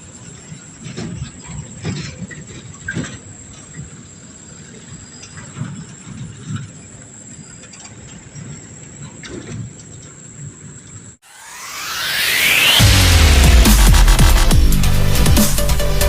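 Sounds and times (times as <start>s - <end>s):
night insects droning: 0.0s - 11.2s
low rumbling: 11.3s - 16.0s.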